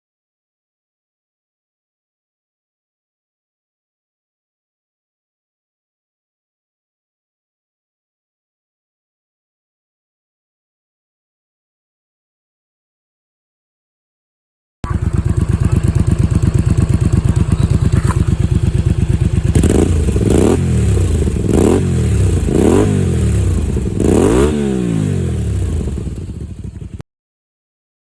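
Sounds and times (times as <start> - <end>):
motorcycle engine idling and revving: 14.8 - 27.0.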